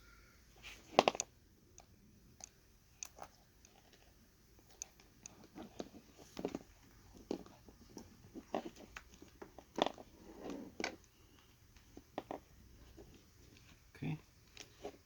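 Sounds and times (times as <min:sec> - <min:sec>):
hands handling plastic parts: 0:00.6 - 0:01.3.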